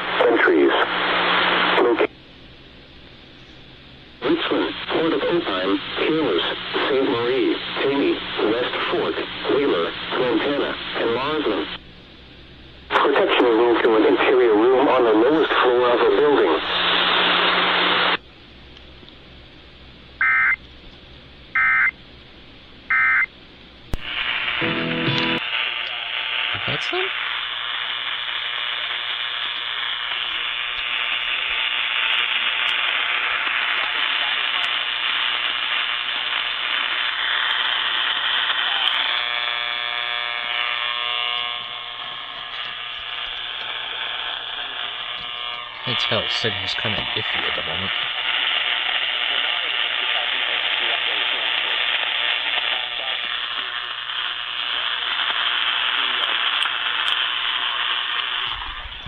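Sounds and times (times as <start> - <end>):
radio static hiss: 0.0 - 2.2, 3.3 - 18.2, 23.9 - 59.0
steady low hum: 0.0 - 59.0
low hum: 50.7 - 59.0.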